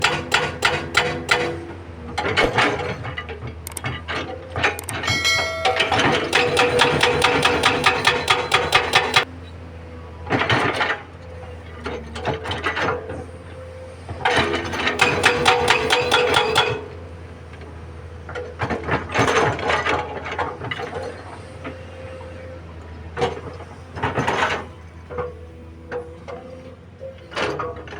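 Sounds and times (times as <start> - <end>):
hydraulic hammer pounding rock: 0.0 - 9.3, 14.1 - 17.0.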